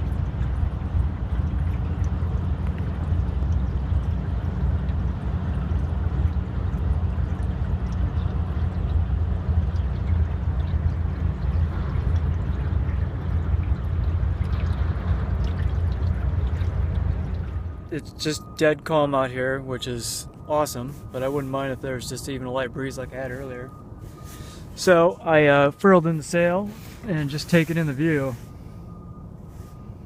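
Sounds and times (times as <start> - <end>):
steady low rumble: 0.0 - 30.0
water trickling along a hull: 0.0 - 30.0.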